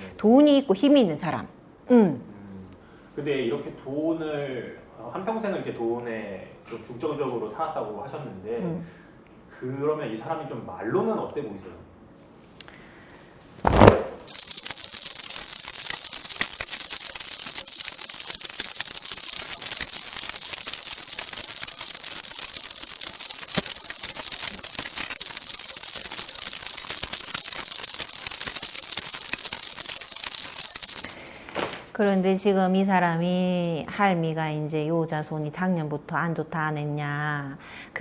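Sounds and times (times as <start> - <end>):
bells jingling: 13.4 - 33.0.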